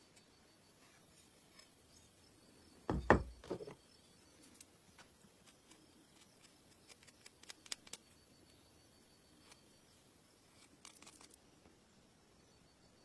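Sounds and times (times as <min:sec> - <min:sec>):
dull knocks: 0:02.9 - 0:03.8.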